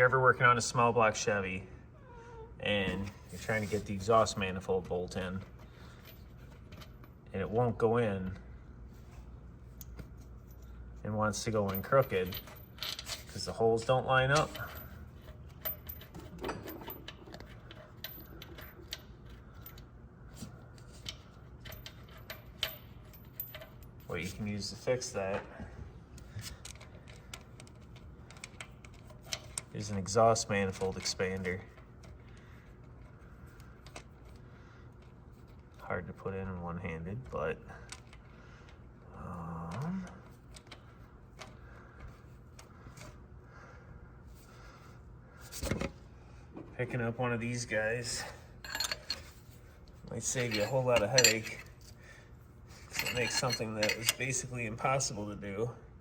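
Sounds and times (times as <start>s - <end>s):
metal clicks and scrapes: 48.6s - 52.0s, 52.8s - 54.5s.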